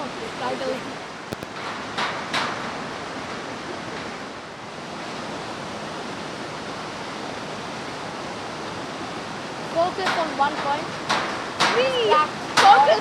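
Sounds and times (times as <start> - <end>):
creek water rushing: 0.0 - 13.0.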